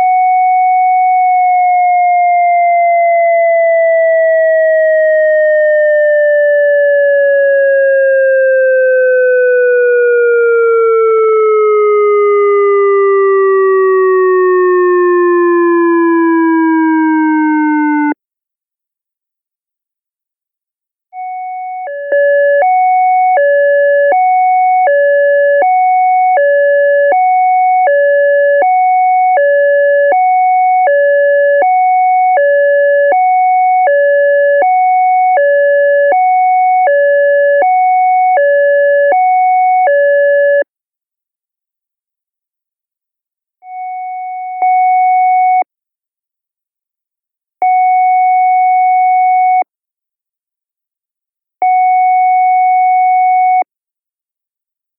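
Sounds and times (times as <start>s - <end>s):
two-tone high-low siren: 0.0s - 18.2s, 21.2s - 40.7s
siren gliding down in pitch: 1.2s - 18.2s.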